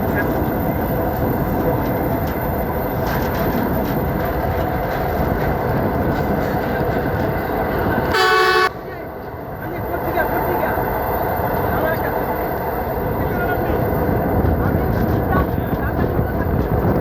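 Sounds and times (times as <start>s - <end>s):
train rumbling on rails: 0.0s - 17.0s
train horn: 8.1s - 8.8s.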